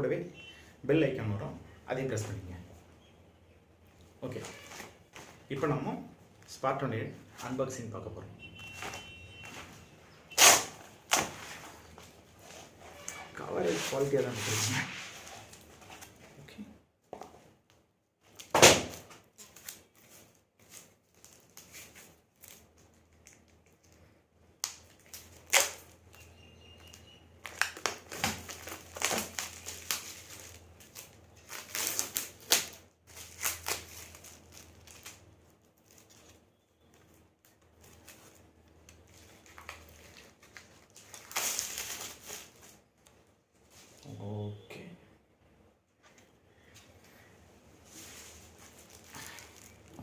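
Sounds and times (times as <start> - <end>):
sharp loud plastic crackle: 10.3 - 11.4, 24.6 - 36.4
plastic packaging crinkling: 19.2 - 24.0, 24.6 - 42.8, 47.9 - 50.0.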